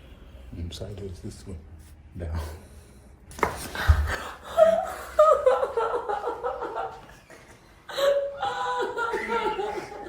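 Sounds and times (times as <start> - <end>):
woman laughing: 8.4 - 10.0.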